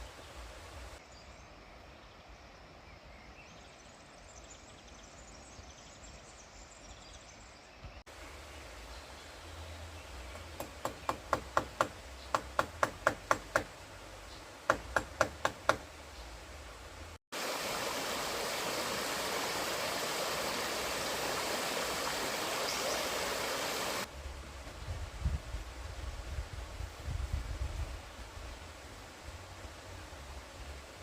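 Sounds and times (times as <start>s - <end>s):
river water flowing: 8.1s - 24.6s
sharp knocks: 10.4s - 13.7s, 14.7s - 15.9s.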